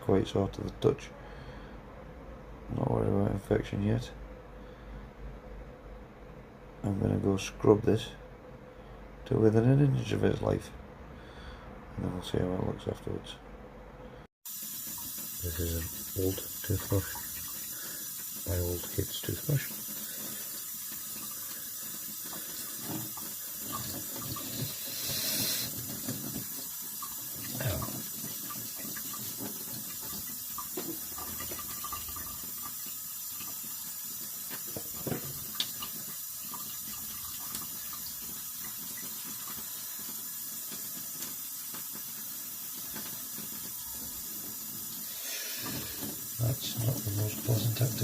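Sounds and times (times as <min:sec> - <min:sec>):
tap water running into sink: 0:14.5 - 0:48.0.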